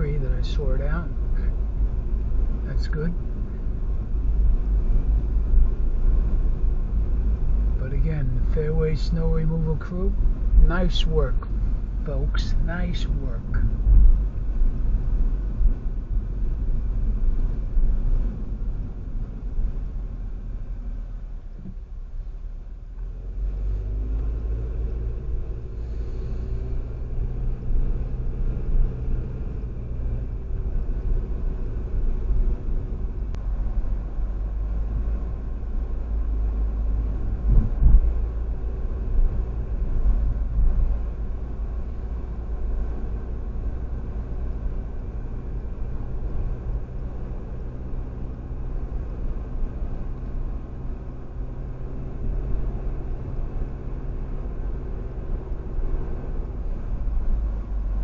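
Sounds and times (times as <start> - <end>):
car engine and tyres rumbling: 0.0 - 58.0
car bump: 37.4 - 38.2.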